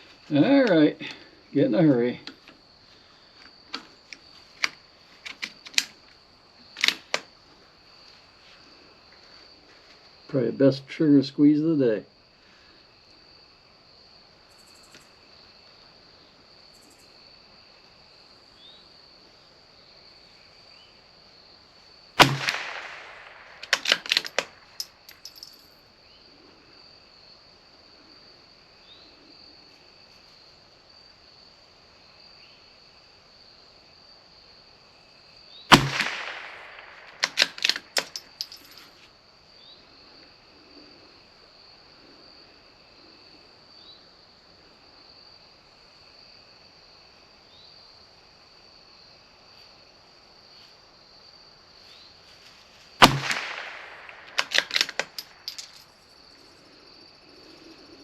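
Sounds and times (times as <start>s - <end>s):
high-pitched insects droning: 0.0s - 58.0s
rifle bolt metallic clicks: 6.8s - 7.3s, 22.2s - 25.6s, 35.7s - 38.8s, 53.0s - 55.9s
rifle shot: 22.2s - 24.9s, 35.7s - 38.3s, 53.0s - 55.7s.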